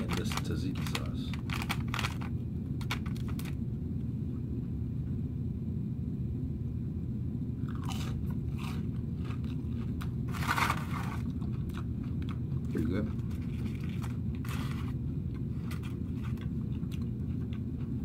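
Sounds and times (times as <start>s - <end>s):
crunching and chewing: 0.0s - 3.7s, 7.6s - 18.0s
steady low hum: 0.0s - 18.0s.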